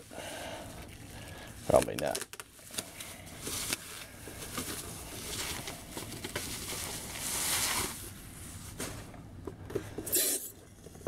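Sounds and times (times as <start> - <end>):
cardboard packaging rustling: 2.1 - 9.1.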